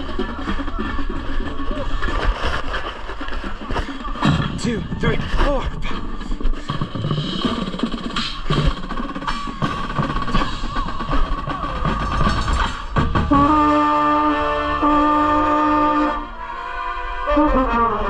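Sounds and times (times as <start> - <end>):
drumline playing: 0.0 - 16.2
brass playing held chord: 13.3 - 18.0.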